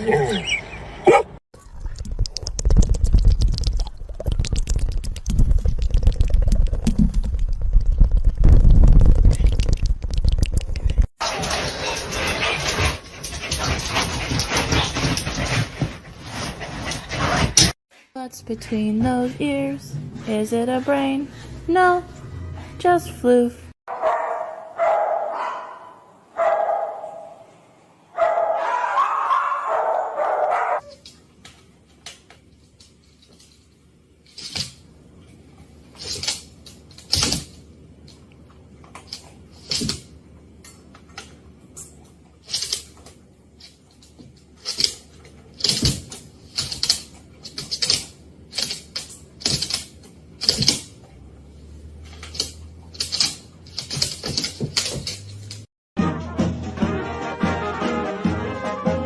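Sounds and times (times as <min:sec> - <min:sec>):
dog barking: 0:00.2 - 0:01.4, 0:23.9 - 0:27.4, 0:28.2 - 0:30.9.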